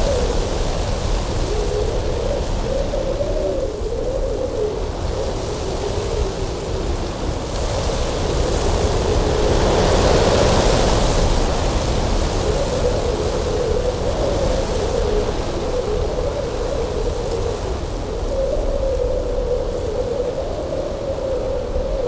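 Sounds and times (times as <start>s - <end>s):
strong wind rumbling and whistling: 0.0s - 22.0s.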